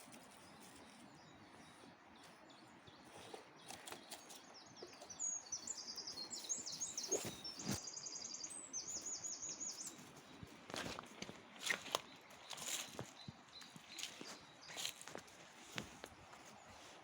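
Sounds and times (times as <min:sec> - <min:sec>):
faint outdoor hiss: 0:00.0 - 0:17.0
songbird trilling: 0:01.2 - 0:10.3.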